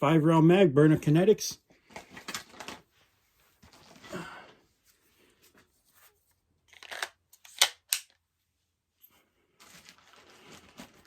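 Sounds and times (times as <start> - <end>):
rustling: 9.1 - 11.0.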